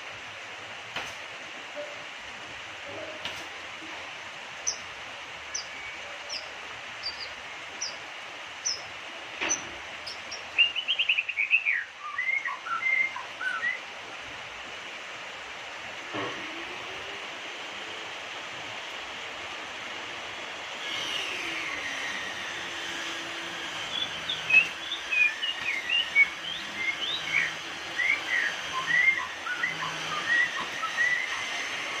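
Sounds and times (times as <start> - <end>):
bird singing: 4.6 - 4.8, 5.5 - 8.0, 8.6 - 8.9, 9.5 - 13.8, 23.7 - 31.8.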